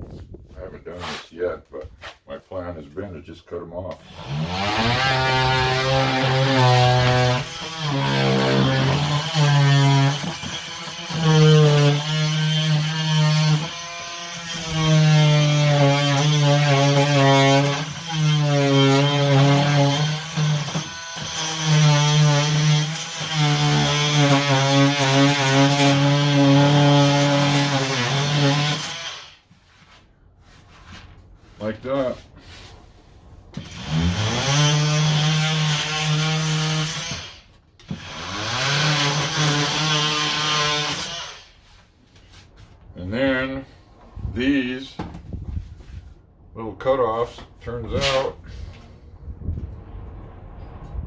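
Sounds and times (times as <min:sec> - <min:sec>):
power saw cutting wood: 0:03.9 - 0:29.6, 0:33.5 - 0:41.8.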